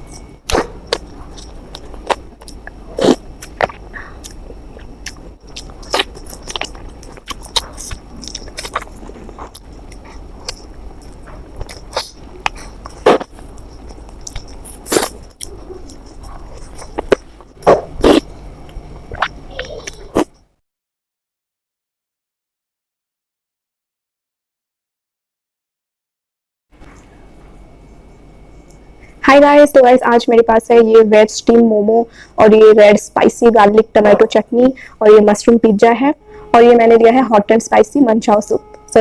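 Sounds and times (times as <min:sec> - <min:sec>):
biting and chewing: 0:00.0 - 0:20.4
mouth clicks and smacks: 0:00.1 - 0:20.4.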